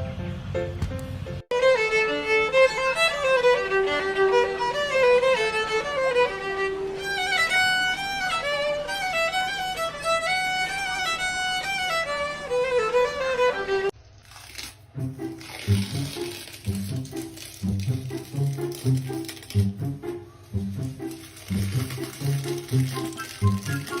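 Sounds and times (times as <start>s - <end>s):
lively violin melody: 1.5s - 13.9s, 16.9s - 24.0s.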